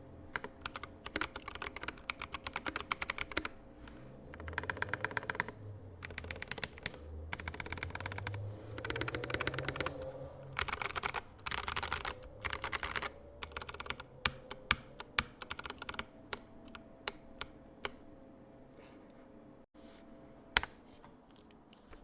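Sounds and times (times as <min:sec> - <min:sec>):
mechanical keyboard typing: 0:00.3 - 0:03.6, 0:04.3 - 0:18.0.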